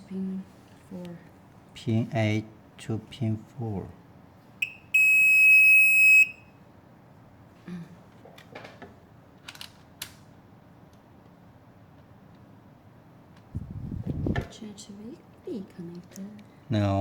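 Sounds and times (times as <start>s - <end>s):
high-pitched tester beep: 4.6s - 6.5s.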